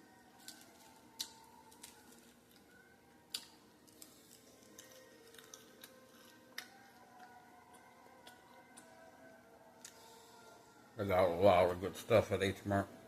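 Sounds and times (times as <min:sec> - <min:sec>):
crunching fried food: 0:00.1 - 0:08.9.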